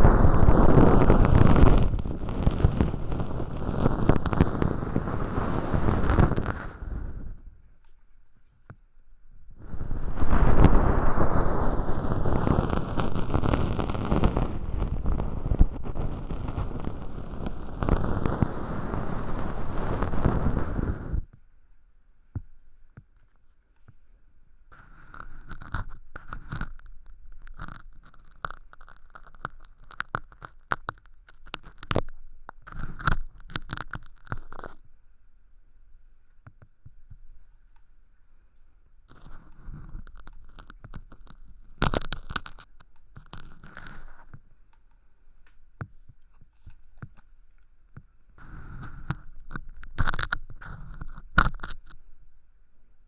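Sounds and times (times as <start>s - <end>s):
ear pick scratching rustle: 0.0s - 7.6s, 9.5s - 21.3s, 39.1s - 44.4s, 48.4s - 52.0s
flakes crackling and clicking: 0.0s - 8.0s, 9.6s - 21.2s, 25.0s - 34.9s, 39.1s - 47.7s, 48.4s - 52.1s.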